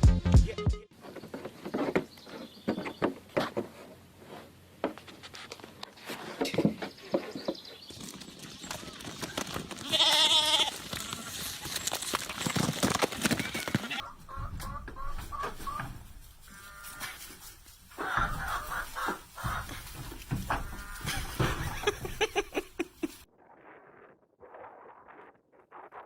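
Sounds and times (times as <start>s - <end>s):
rustling: 1.0s - 23.3s
farm animal bleating: 9.7s - 11.6s, 13.2s - 21.6s
clatter of knocks: 18.1s - 22.7s.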